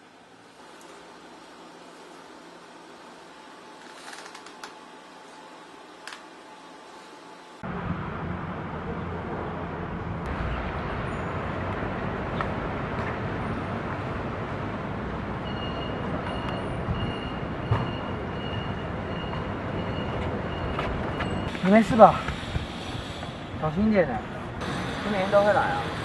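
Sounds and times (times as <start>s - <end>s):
distant traffic rumble: 7.6s - 26.0s.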